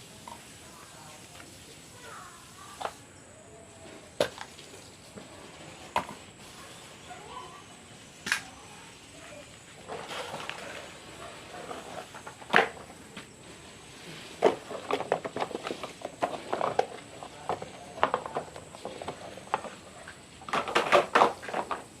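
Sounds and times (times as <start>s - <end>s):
plastic toys clattering: 9.6s - 22.0s.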